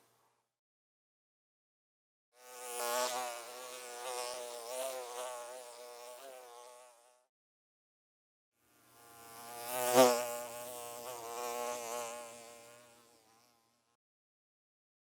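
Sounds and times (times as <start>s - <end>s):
bee buzzing in flight: 2.4s - 7.3s, 9.0s - 13.9s.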